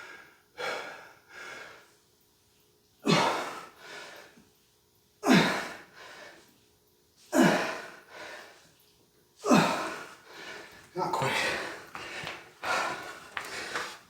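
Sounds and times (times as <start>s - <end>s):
man breathing heavily: 0.0s - 2.0s, 7.3s - 8.6s, 9.4s - 14.0s.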